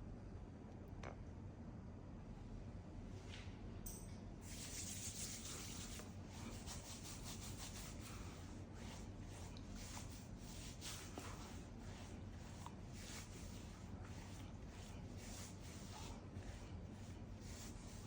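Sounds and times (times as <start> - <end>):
brush rubbing through beard: 4.5 - 18.0.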